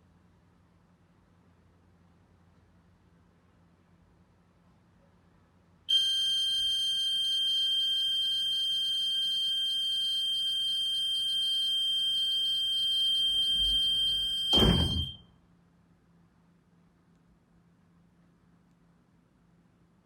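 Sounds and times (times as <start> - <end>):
shrill buzzer alarm tone: 5.9 - 15.2.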